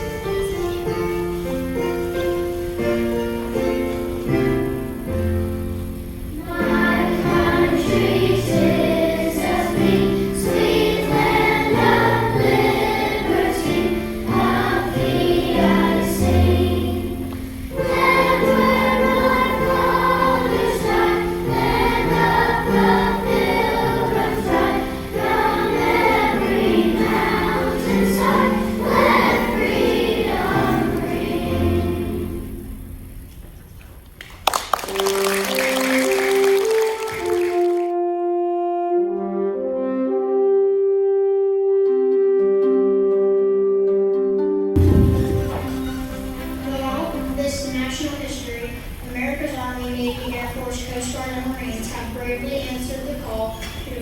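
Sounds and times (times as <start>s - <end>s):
instrumental accompaniment: 0.0s - 33.4s, 34.9s - 48.2s
choir singing: 6.3s - 33.1s, 44.8s - 48.0s.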